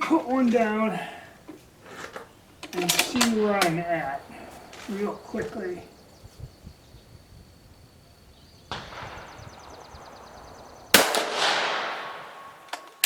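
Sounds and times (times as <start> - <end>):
rifle shot with echo: 8.7 - 13.0.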